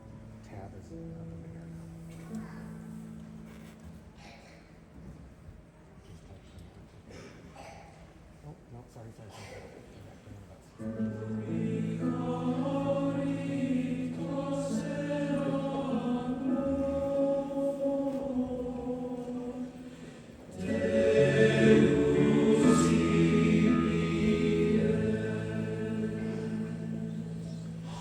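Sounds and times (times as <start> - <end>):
choir singing: 10.8 - 28.0.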